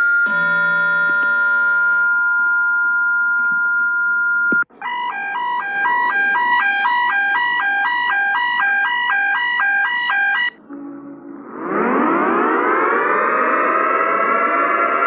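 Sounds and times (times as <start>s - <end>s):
steady two-pitch attention tone: 0.0s - 3.4s, 10.6s - 14.8s
high-low alarm tone: 0.0s - 4.2s, 4.8s - 15.0s.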